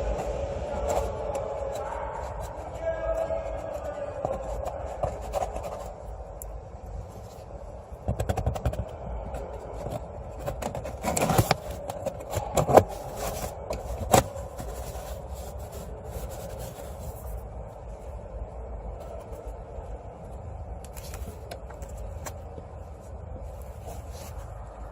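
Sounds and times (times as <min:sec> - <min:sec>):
scraping on plastic housing: 0:08.0 - 0:17.3.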